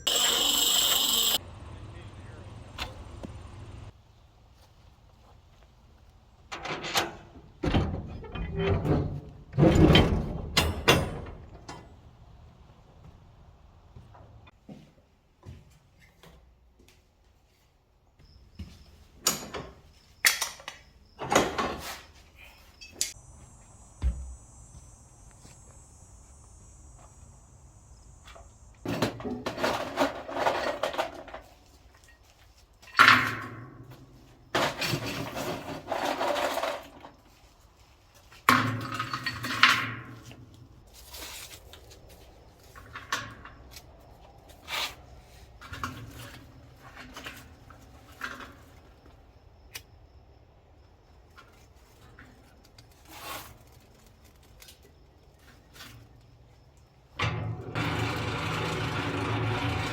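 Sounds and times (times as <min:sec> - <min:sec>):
metal scraping: 0:00.0 - 0:01.4, 0:57.3 - 0:59.9
metal objects clanking: 0:07.8 - 0:11.8.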